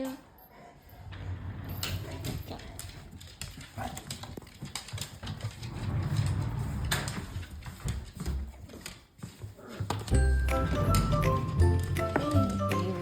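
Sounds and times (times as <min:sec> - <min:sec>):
dog claws clicking on hard floor: 0:01.7 - 0:12.8
low rubbing noise: 0:05.4 - 0:08.1.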